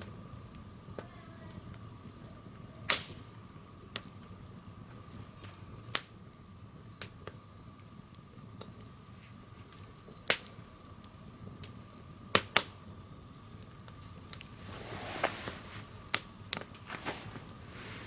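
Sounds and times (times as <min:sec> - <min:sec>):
burning log popping: 0:00.0 - 0:18.0.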